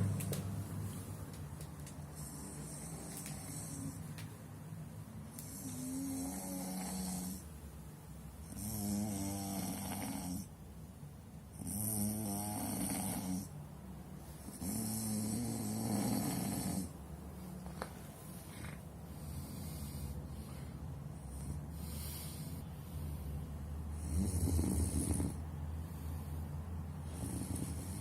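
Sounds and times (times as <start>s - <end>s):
man snoring heavily: 5.5s - 7.4s, 8.5s - 10.5s, 11.6s - 13.5s, 14.5s - 16.9s, 23.9s - 25.4s, 27.1s - 28.0s.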